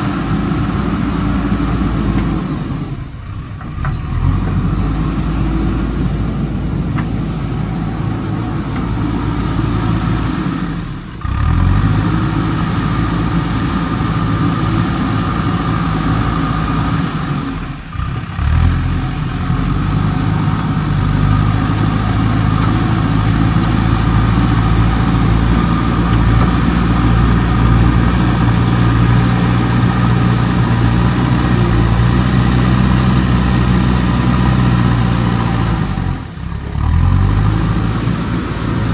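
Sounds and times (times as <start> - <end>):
heavy diesel engine running: 0.0 - 38.9.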